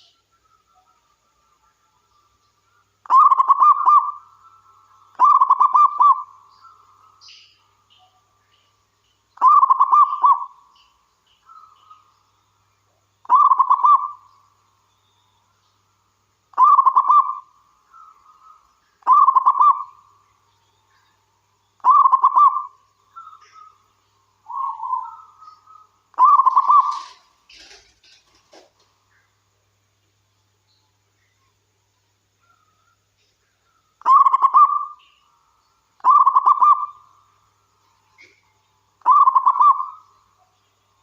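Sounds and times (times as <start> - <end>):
dove cooing: 3.1 - 4.2, 5.2 - 6.3, 9.4 - 10.5, 13.3 - 14.2, 16.6 - 17.4, 18.0 - 19.9, 21.8 - 23.7, 24.5 - 28.7, 34.0 - 35.0, 36.0 - 37.0, 39.0 - 40.0.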